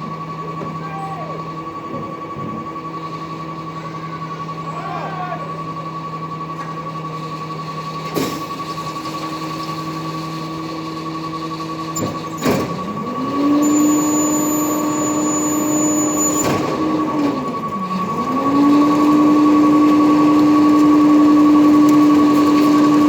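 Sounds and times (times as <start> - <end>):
truck engine running: 0.0 - 23.0
rapid pulsing high-pitched beep: 13.6 - 16.5.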